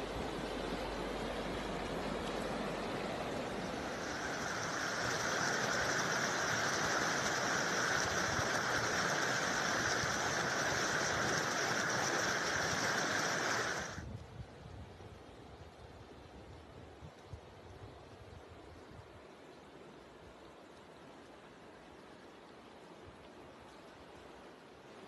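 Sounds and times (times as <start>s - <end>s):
water rushing: 0.0s - 14.1s.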